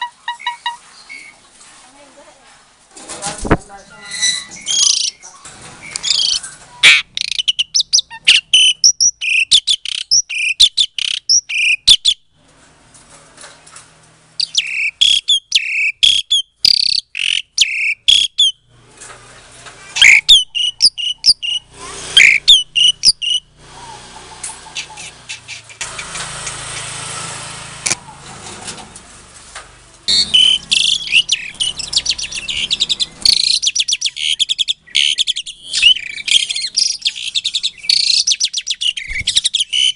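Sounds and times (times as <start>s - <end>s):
starling whistling and chattering: 4.0s - 12.2s, 14.4s - 18.6s, 20.0s - 25.8s, 30.1s - 39.9s.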